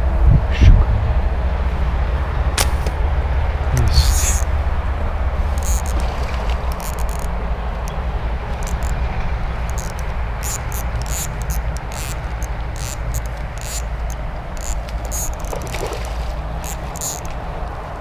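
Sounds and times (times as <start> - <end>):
low water rumble: 0.0 - 18.0
water splashing: 3.8 - 17.7.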